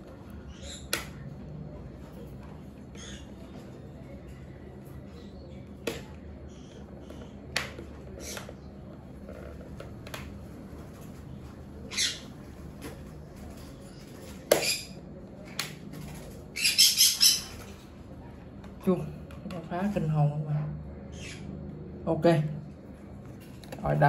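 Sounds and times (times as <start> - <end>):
parrots squawking: 11.9 - 12.4, 16.6 - 17.7.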